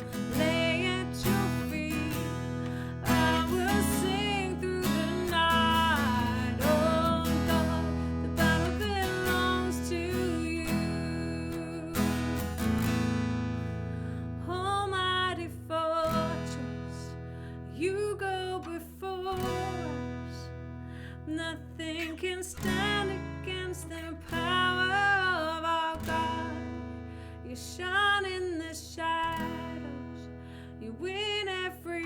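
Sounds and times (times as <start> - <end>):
person singing: 0.0 - 12.4
strummed acoustic guitar: 0.0 - 32.0.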